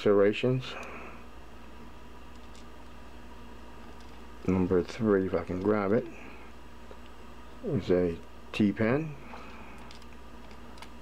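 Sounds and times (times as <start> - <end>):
electrical hum and hiss: 0.0 - 11.0.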